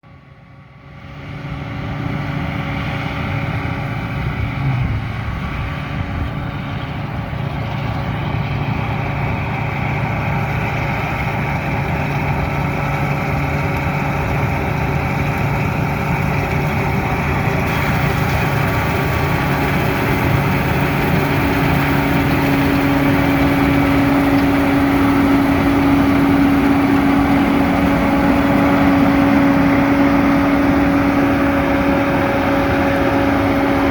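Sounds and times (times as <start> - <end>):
combine harvester running: 0.0 - 33.9.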